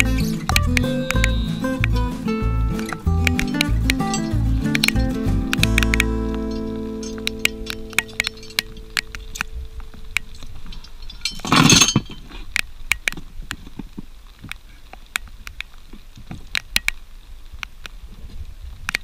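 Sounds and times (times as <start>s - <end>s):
raindrops plinking on hard surface: 0.0s - 13.2s.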